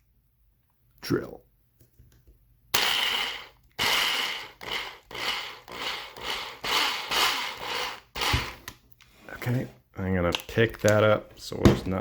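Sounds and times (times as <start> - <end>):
power drill boring: 2.8 - 8.7.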